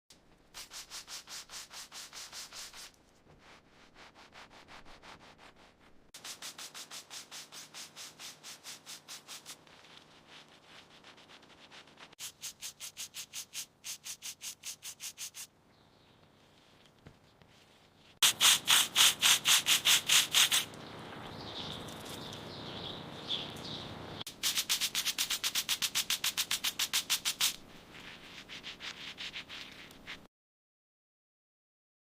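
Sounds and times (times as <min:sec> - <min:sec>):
scrubbing a steel blade: 0:06.2 - 0:15.5, 0:18.2 - 0:20.8.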